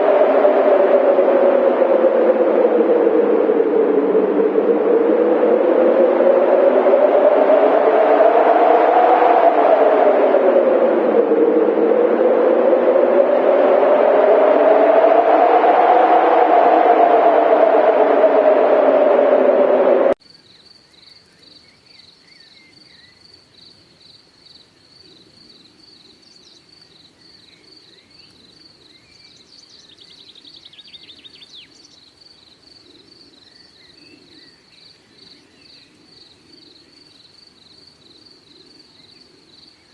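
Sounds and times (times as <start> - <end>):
cricket chirping: 20.2 - 39.9.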